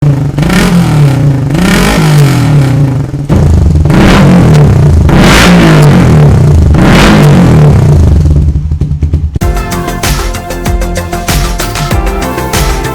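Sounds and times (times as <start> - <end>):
motorcycle engine revving: 0.0 - 9.4.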